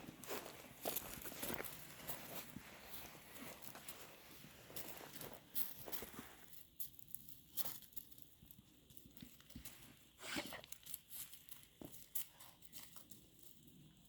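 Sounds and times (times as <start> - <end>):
dog paws scuffing: 0.0 - 6.4.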